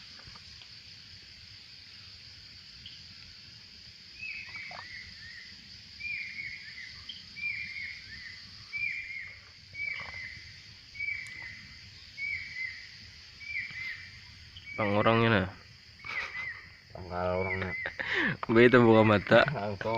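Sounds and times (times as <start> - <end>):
high insect drone: 0.0 - 19.9.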